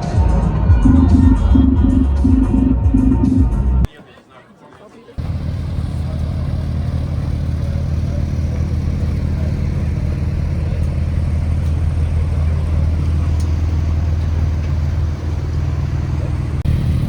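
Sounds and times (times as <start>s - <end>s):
car engine droning: 0.7s - 3.9s, 5.2s - 17.0s
road and tyre noise: 5.1s - 17.0s.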